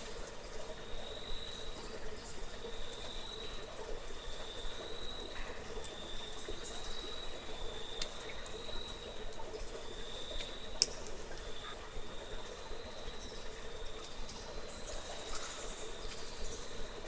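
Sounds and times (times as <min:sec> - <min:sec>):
water drips and clicks: 0:04.8 - 0:11.8, 0:13.2 - 0:17.0.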